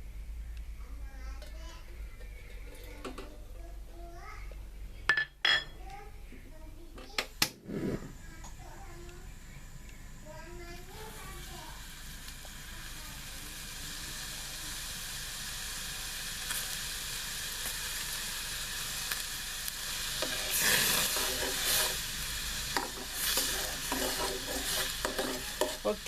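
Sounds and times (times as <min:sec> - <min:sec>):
crackling pops: 0:07.1 - 0:09.2
liquid sizzling in a pan: 0:07.6 - 0:26.0.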